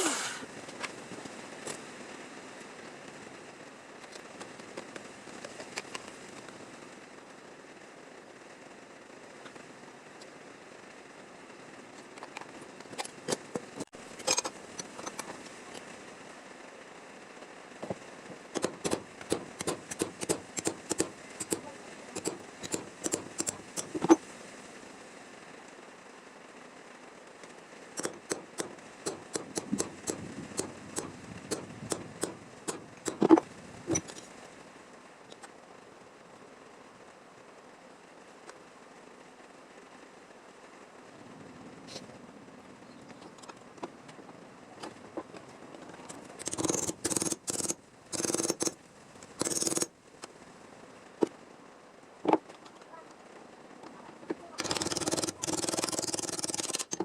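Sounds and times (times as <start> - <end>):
sharp clicks: 18.5 - 24.2, 28.0 - 34.3, 46.1 - 50.4, 54.6 - 57.0
hammer tapping sheet metal: 18.6 - 23.9, 28.0 - 33.3.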